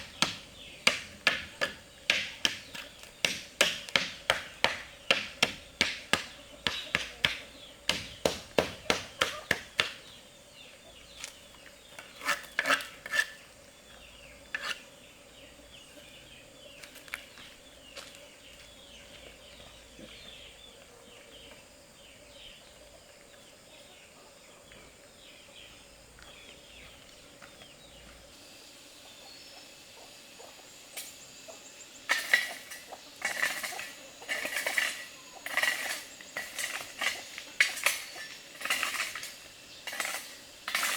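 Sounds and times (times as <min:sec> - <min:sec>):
clinks and knocks: 0:32.1 - 0:40.9.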